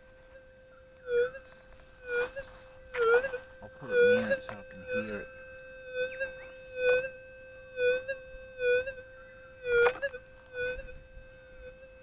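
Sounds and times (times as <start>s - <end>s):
metal detector threshold hum: 0.0s - 12.0s
brief electronic warble: 1.1s - 12.0s
crackle: 9.6s - 11.9s.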